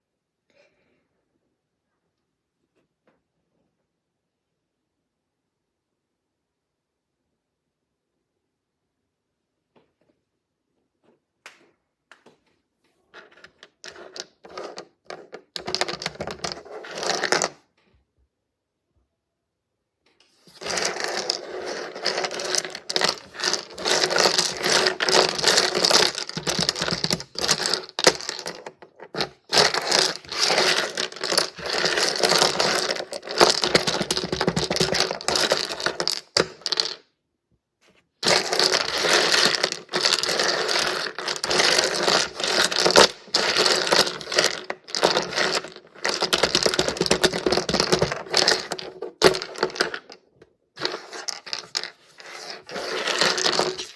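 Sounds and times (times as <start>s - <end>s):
resin pieces clicking and clattering: 13.2s - 17.6s, 20.5s - 37.0s, 38.2s - 53.9s.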